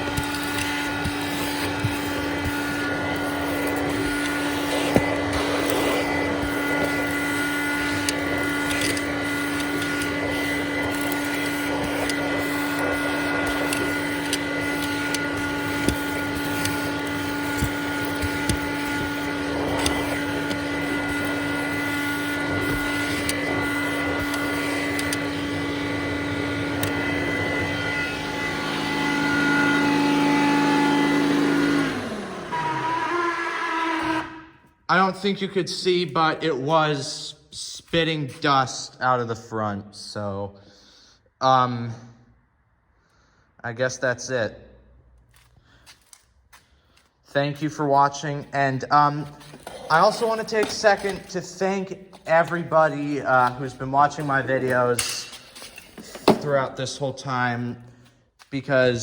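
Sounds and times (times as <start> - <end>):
vacuum cleaner motor whine: 0.0 - 34.8, 47.4 - 57.9.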